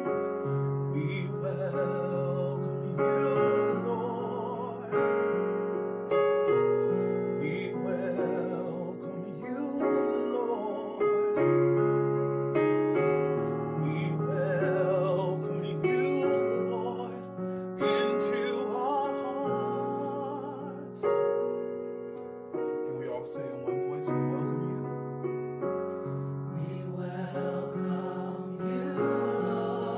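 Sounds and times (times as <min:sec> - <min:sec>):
sustained piano chords: 0:00.0 - 0:29.9
vocal group singing: 0:01.0 - 0:05.0, 0:26.5 - 0:29.9.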